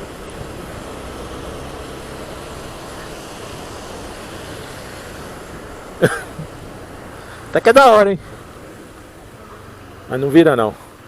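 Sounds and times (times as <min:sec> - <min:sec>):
motorcycle engine running: 0:00.0 - 0:10.4
wind and road noise: 0:00.0 - 0:11.0.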